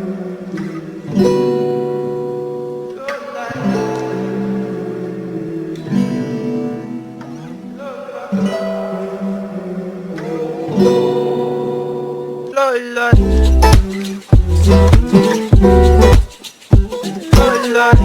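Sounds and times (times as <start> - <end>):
strummed guitar chords: 13.2 - 18.0.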